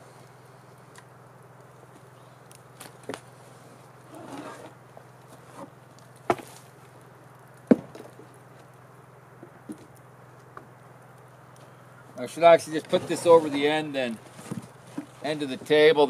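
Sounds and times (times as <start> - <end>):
low electrical hum: 0.0 - 16.0
wood scraping: 3.0 - 6.7, 12.6 - 15.8.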